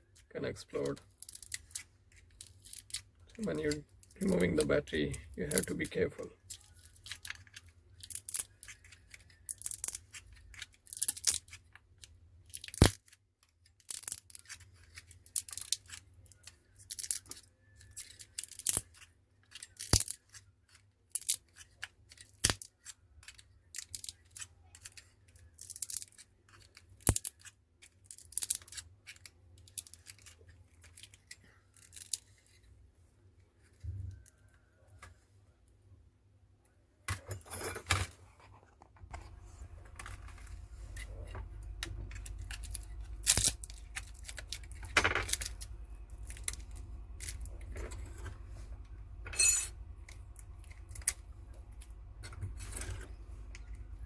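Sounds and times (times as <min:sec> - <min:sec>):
adhesive scraping and tearing: 0:39.2 - 0:48.5.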